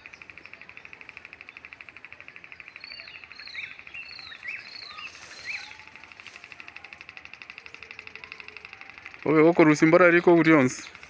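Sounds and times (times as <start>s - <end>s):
bird chirping: 0.0s - 11.0s
cricket trilling: 0.0s - 11.0s.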